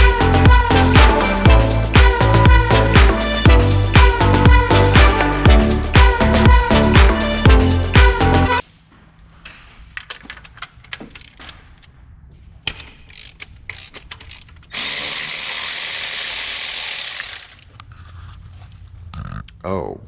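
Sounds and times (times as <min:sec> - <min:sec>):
ratchet wrench clicking: 0:13.0 - 0:17.7.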